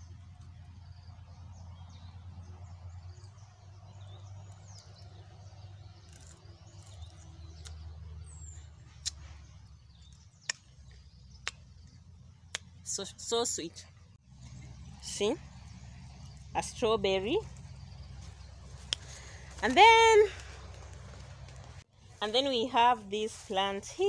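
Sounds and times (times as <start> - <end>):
faint birds chirping: 0.0 - 24.0
steady low rumble: 13.9 - 22.2.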